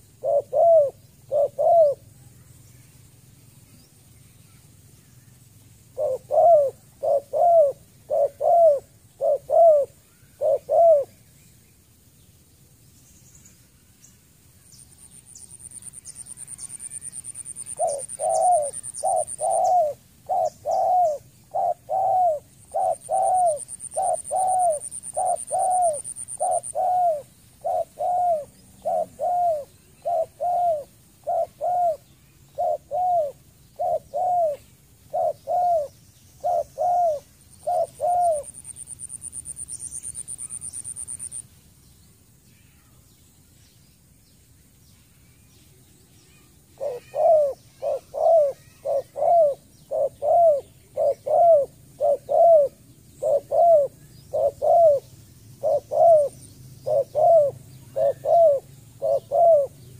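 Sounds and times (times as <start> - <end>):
dove cooing: 0.0 - 2.1, 5.9 - 11.1, 16.3 - 41.4, 46.8 - 59.8.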